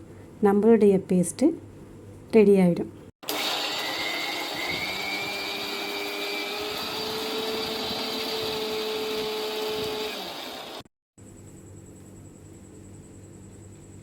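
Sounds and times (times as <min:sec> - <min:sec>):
mixer grinder motor whine: 0:03.2 - 0:10.9.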